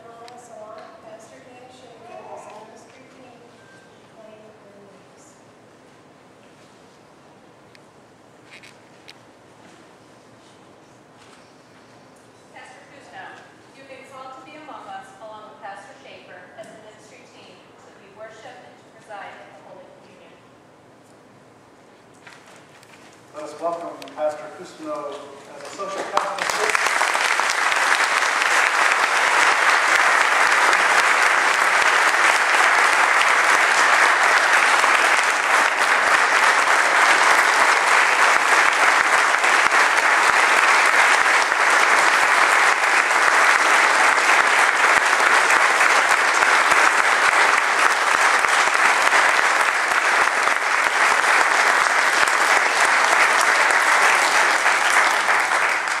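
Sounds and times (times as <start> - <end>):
congregation applauding: 24.9 - 56.0.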